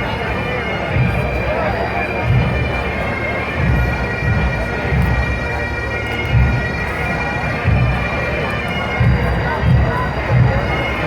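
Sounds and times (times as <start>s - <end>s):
bagpipes playing: 0.0s - 11.0s
bass drum beats: 6.3s - 7.0s.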